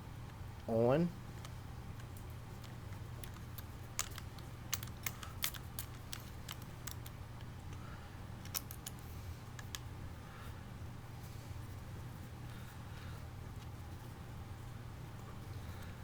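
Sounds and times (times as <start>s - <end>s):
metal parts clicking and tapping: 1.4s - 7.8s, 8.4s - 9.9s.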